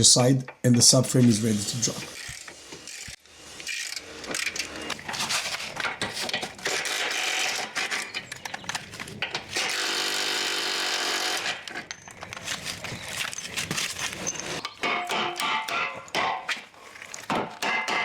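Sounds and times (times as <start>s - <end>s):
cordless impact wrench running: 9.5s - 11.8s
tools clattering on metal bolts: 11.4s - 13.5s.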